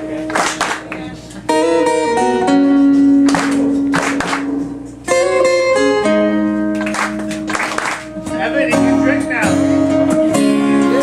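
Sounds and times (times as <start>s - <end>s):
audience clapping along: 0.0s - 1.1s, 3.2s - 4.7s, 6.7s - 8.3s
acoustic band with guitar: 0.0s - 11.0s.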